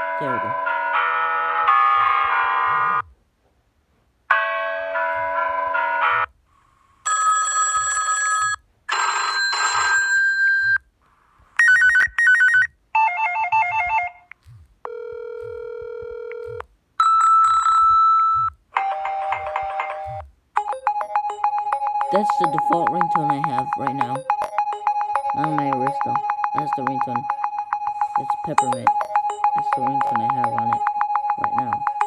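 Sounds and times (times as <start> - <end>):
phone ringtone snippets: 7.1 - 10.8, 11.6 - 14.2, 14.9 - 32.0.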